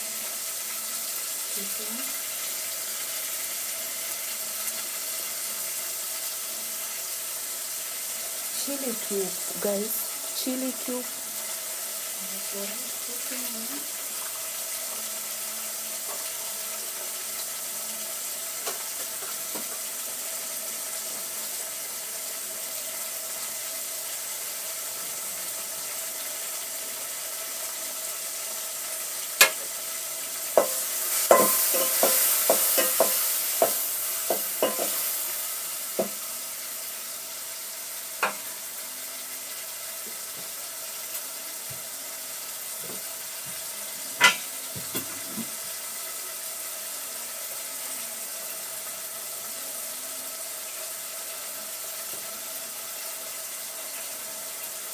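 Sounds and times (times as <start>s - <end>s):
sauce sizzling in a pot: 0.0s - 54.9s
spoon knocking against pot: 30.6s - 35.0s, 44.2s - 45.5s.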